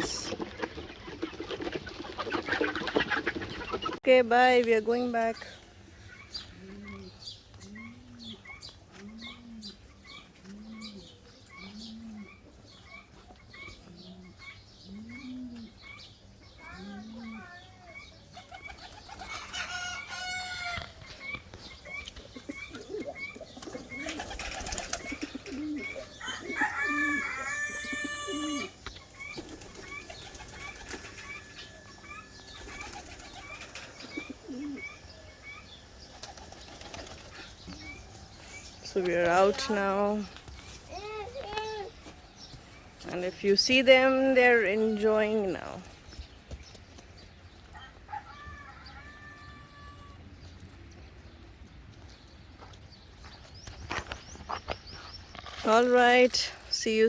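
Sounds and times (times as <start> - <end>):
pigeons cooing: 0.0 - 4.0, 6.0 - 17.6, 18.3 - 38.8
wings flapping: 0.0 - 4.0, 23.6 - 26.0, 29.0 - 34.7, 36.1 - 38.0.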